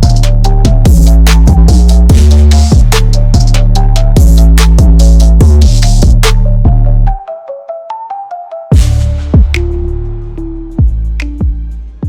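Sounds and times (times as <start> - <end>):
deep kick drum thumps: 0.0 - 3.6, 4.2 - 6.9, 8.8 - 9.7, 10.8 - 11.6
background electronic music: 0.0 - 12.0.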